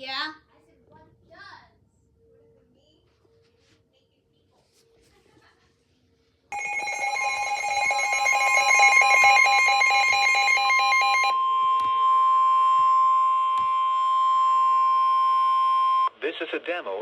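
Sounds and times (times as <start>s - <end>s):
steady alert tone: 6.6s - 11.4s
switching electronic data tones: 6.6s - 16.1s.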